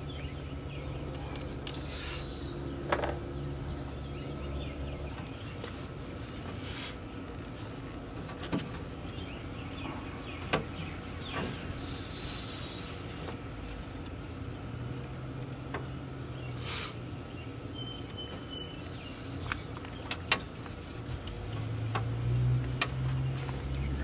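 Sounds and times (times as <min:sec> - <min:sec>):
vehicle engine hum: 0:00.0 - 0:24.0.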